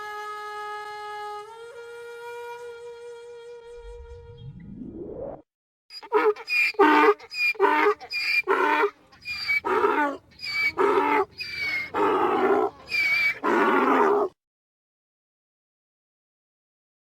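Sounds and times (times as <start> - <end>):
donkey braying: 5.9 - 14.3.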